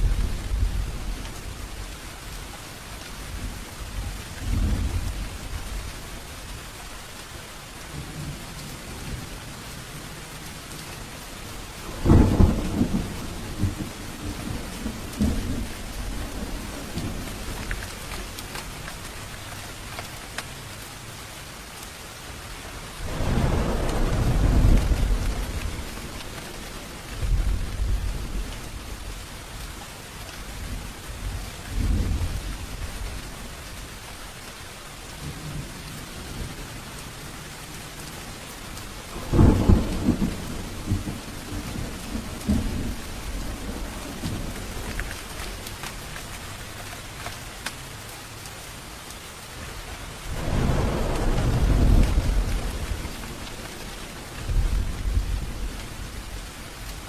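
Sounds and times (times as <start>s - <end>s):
thunder rumbling and cracking: 0.0s - 6.8s, 7.8s - 19.4s, 22.8s - 29.7s, 30.4s - 34.1s, 35.2s - 47.3s, 49.5s - 57.0s
heavy rain falling: 0.0s - 57.0s.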